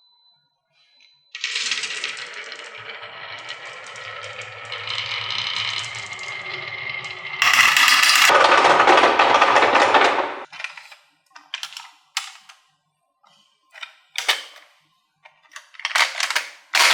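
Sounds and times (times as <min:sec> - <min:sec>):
marbles rattling down wooden run: 0:01.4 - 0:06.7, 0:07.4 - 0:10.5, 0:15.8 - 0:16.9.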